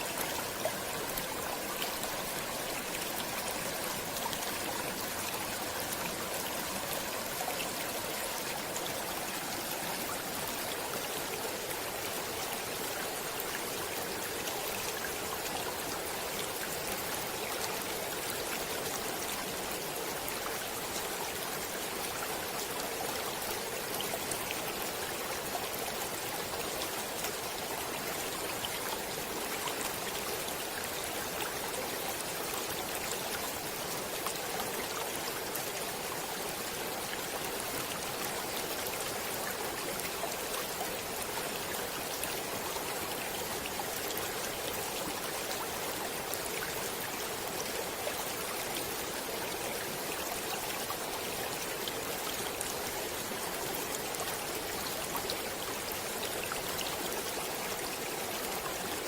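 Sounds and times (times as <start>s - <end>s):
stream water flowing: 0.0s - 59.0s.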